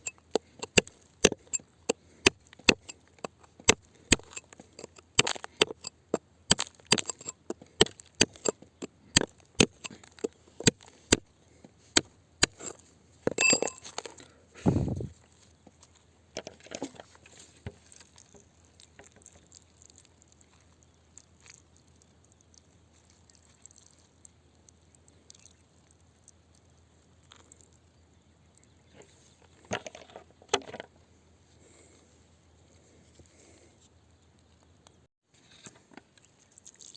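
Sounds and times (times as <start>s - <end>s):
digging tool striking rock: 0.0s - 11.3s, 11.9s - 14.1s
tool scraping rock: 0.0s - 15.0s.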